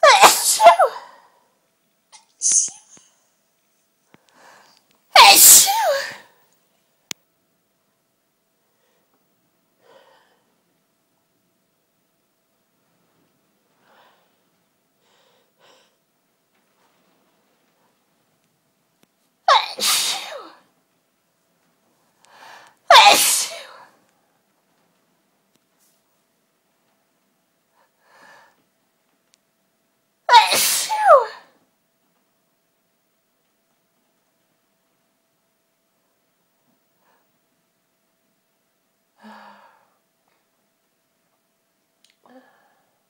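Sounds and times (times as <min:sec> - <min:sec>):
woman sneezing: 0:00.0 - 0:01.3, 0:02.2 - 0:03.0, 0:05.2 - 0:06.3, 0:19.5 - 0:20.6, 0:22.9 - 0:23.9, 0:30.3 - 0:31.5.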